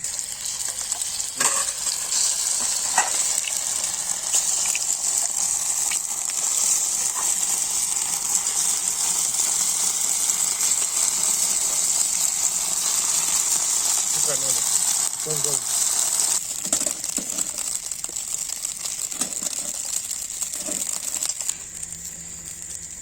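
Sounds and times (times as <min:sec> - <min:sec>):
egg sizzling in oil: 0:00.0 - 0:23.0.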